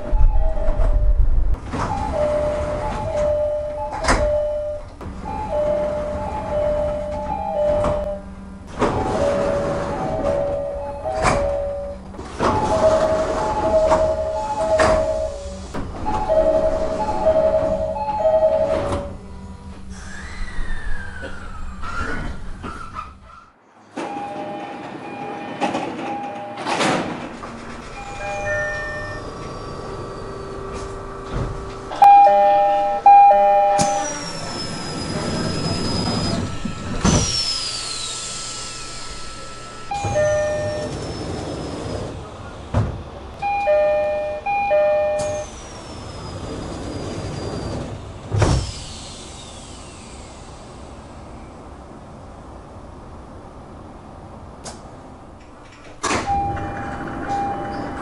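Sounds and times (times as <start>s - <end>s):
three-tone train door chimes: 0.0s - 19.7s, 23.9s - 42.2s, 43.4s - 48.0s, 56.0s - 58.0s.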